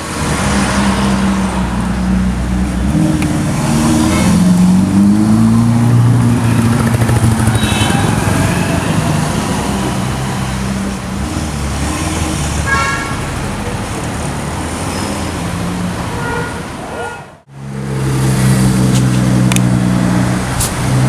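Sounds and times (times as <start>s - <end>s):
road traffic: 0.0s - 21.0s
vehicle horns tooting: 6.2s - 10.3s, 12.6s - 13.6s, 16.1s - 17.4s.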